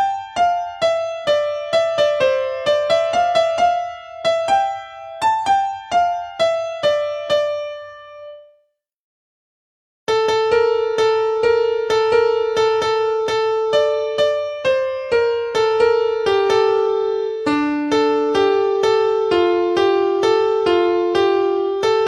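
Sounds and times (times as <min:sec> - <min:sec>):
electric piano melody: 0:00.0 - 0:08.6, 0:10.1 - 0:22.0.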